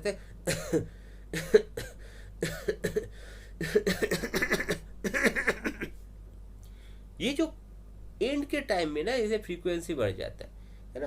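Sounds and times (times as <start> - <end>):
man imitating baby coughing: 0.5 - 6.0.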